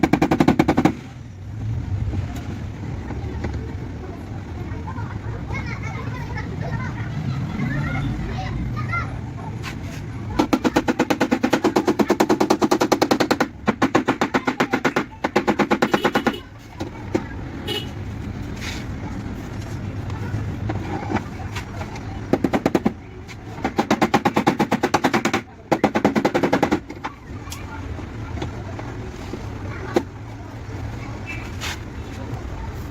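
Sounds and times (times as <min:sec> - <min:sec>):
tool tapping on car panel: 0:00.0 - 0:01.0, 0:10.4 - 0:16.4, 0:22.3 - 0:23.0, 0:23.6 - 0:27.0.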